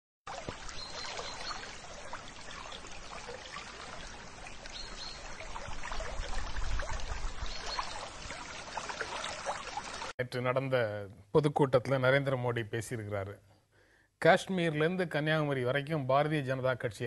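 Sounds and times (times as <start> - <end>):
water rushing: 0.3 - 10.2.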